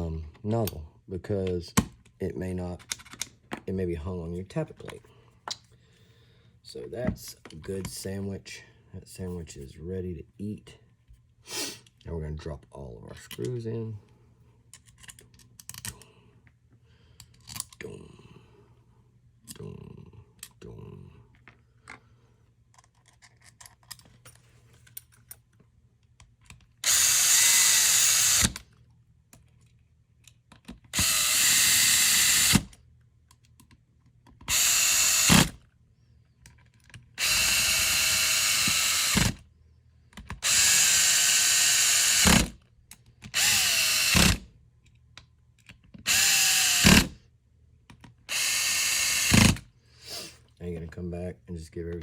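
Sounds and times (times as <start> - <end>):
power screwdriver whining: 26.8 - 28.6, 30.9 - 32.7, 34.5 - 35.6, 37.2 - 39.4, 40.4 - 42.6, 43.3 - 44.5, 46.0 - 47.2, 48.3 - 49.7.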